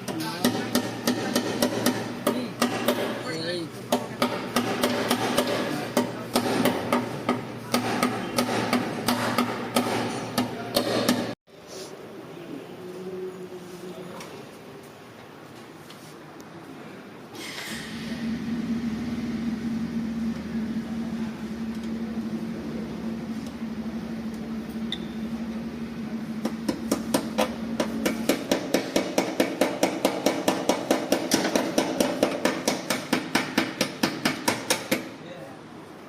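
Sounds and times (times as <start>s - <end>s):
steady mechanical hum: 0.0s - 36.0s.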